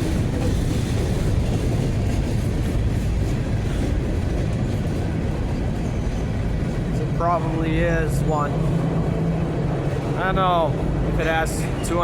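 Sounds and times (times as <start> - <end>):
freight train wheels rumbling: 0.0 - 12.0.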